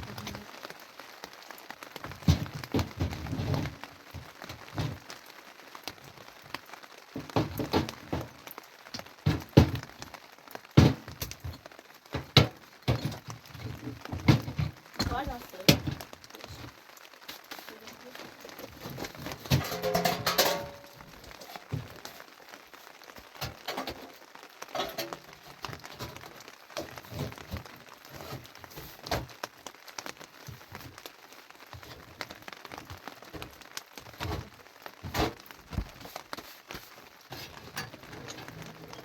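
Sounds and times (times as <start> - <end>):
sharp knocks and clacks: 19.4 - 21.9.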